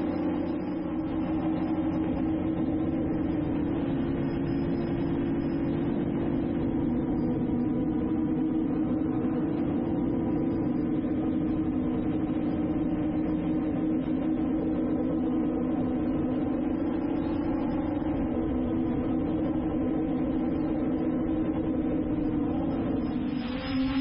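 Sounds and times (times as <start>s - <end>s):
drone propellers humming: 0.0s - 24.0s.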